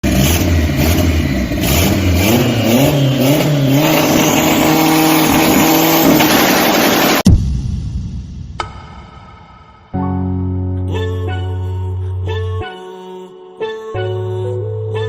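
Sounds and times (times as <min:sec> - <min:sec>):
car engine revving: 0:00.0 - 0:07.2.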